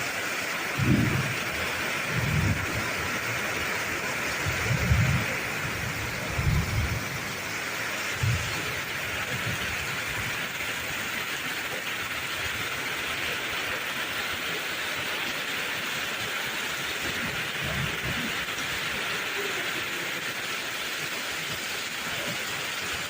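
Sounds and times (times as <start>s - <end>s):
heavy rain pouring: 0.0s - 23.0s.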